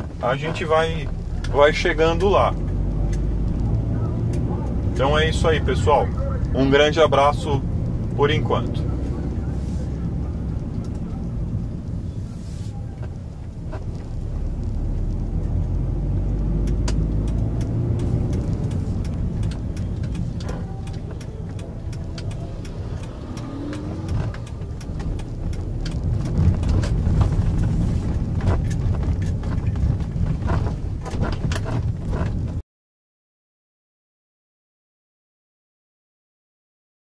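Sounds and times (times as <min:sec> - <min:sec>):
road and engine rumble: 0:00.0 - 0:32.6
small clicks and knocks: 0:13.0 - 0:32.6.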